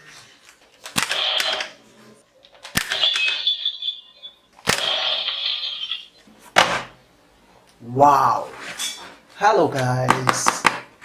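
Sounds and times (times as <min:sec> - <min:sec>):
high electronic beeping: 0:03.0 - 0:06.2.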